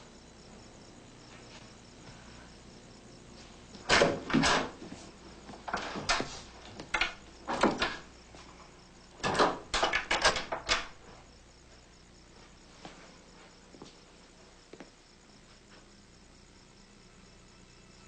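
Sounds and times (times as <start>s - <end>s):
short knocks and clatters: 3.8s - 8.6s, 9.2s - 11.0s.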